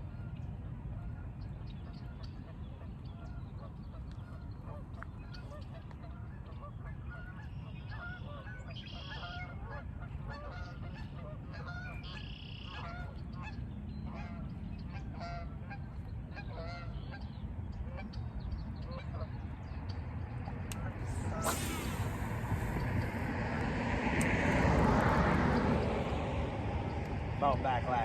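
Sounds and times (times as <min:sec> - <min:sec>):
steady low rumble: 0:13.1 - 0:28.0
geese honking: 0:16.4 - 0:17.2.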